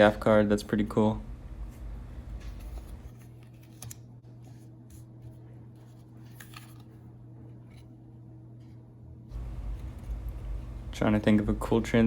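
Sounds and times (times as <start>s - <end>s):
steady low hum: 0.0s - 12.0s
playing cards clicking and snapping: 2.5s - 4.1s.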